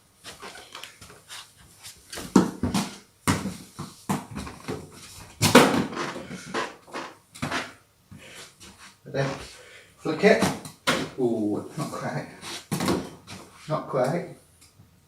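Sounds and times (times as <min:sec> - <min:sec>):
football kicked and bouncing: 0:02.2 - 0:06.0.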